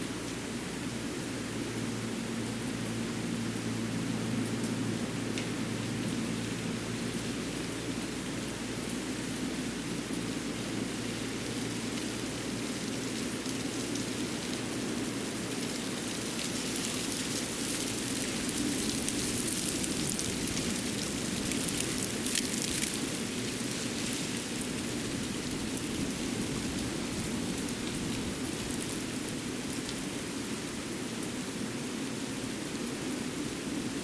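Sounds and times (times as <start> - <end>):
steady hiss: 0.0 - 34.0
light pattering ticks: 10.1 - 30.3.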